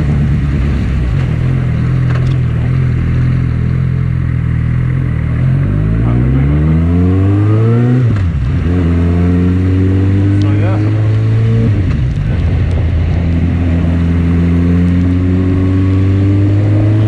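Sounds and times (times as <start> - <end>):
motorcycle engine accelerating: 0.0 - 17.0
wind noise on microphone: 10.9 - 17.0.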